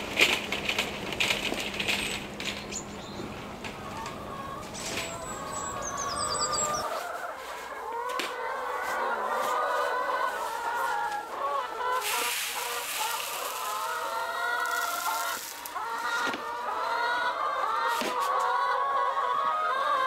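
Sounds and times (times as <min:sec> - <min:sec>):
hens clucking: 0:00.3 - 0:20.0
rustling hiss: 0:12.0 - 0:15.8.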